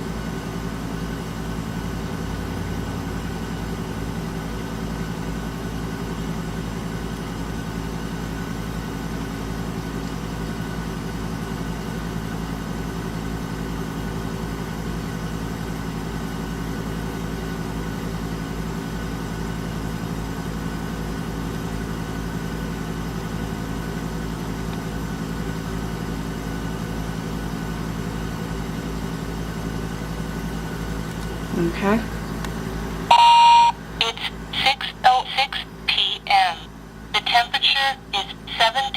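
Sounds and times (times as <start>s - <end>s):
air conditioner humming: 27.8s - 38.9s
person talking: 31.5s - 32.2s, 33.1s - 38.9s.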